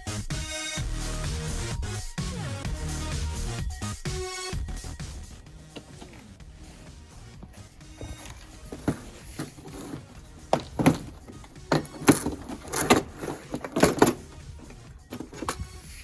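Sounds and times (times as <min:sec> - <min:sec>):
background music: 0:00.0 - 0:16.0
tools knocking and clanking: 0:05.6 - 0:16.0.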